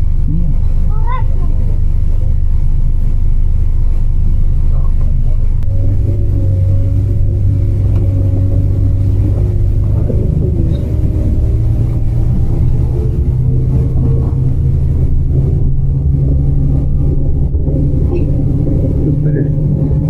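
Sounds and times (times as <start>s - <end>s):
car engine and road rumble: 0.0s - 20.0s
wind noise on microphone: 5.1s - 20.0s.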